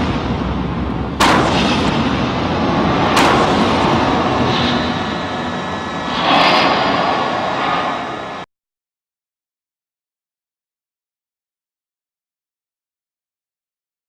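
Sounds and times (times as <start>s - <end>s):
explosion booms with rolling echo: 0.0s - 8.5s.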